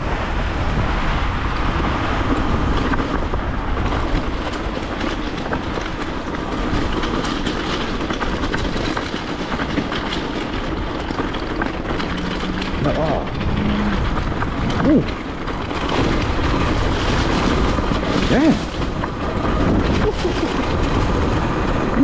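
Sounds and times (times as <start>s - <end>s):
wind and tyres rumbling: 0.0s - 22.0s
bike clicks and rattles: 1.5s - 22.0s.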